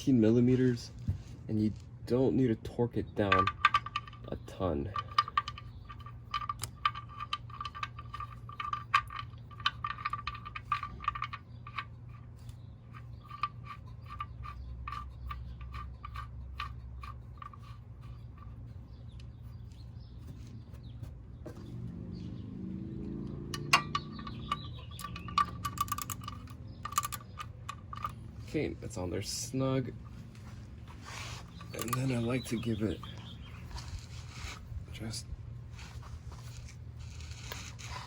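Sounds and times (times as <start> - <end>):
ratchet wrench clicking: 23.5 - 28.3, 31.4 - 32.3.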